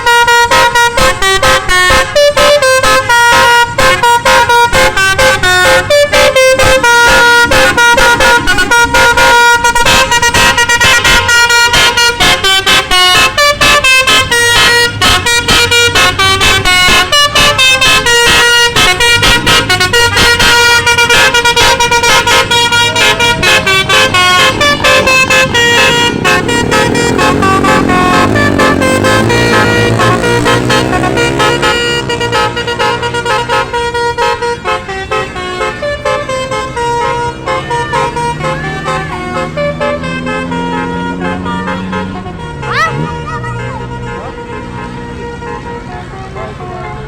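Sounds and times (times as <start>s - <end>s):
musical bus horn melody: 0.0s - 47.0s.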